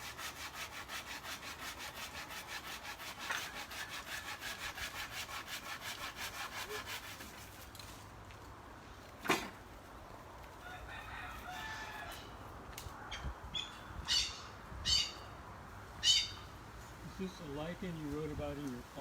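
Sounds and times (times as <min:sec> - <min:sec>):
hand saw cutting wood: 0:00.0 - 0:07.9.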